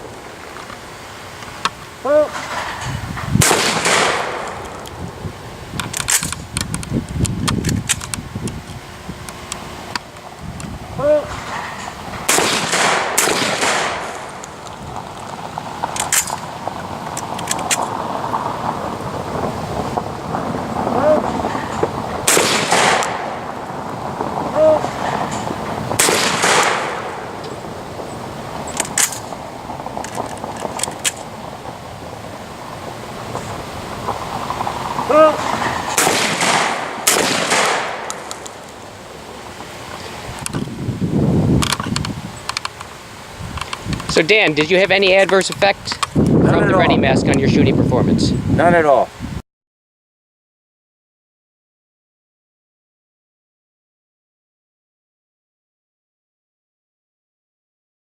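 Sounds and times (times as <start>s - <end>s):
shotgun reloading clicks: 1.5s - 5.0s, 5.8s - 8.2s, 12.2s - 15.3s, 15.9s - 16.4s, 17.1s - 17.9s, 21.5s - 23.3s, 25.2s - 27.5s, 28.7s - 29.4s, 30.0s - 31.3s, 35.9s - 38.8s
wind buffeting microphone: 2.7s - 49.4s
shotgun shot reverberation: 3.4s - 4.8s, 12.3s - 14.4s, 22.3s - 23.4s, 26.0s - 27.3s, 36.0s - 38.5s.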